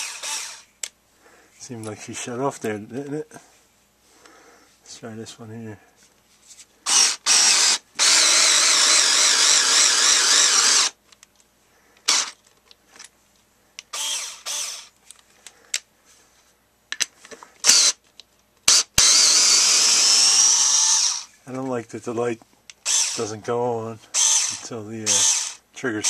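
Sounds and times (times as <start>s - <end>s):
cordless screwdriver motor running: 0.0s - 0.6s, 6.9s - 11.0s, 12.1s - 12.4s, 13.9s - 14.9s, 17.6s - 18.0s, 18.7s - 21.3s, 22.8s - 23.3s, 24.2s - 25.6s.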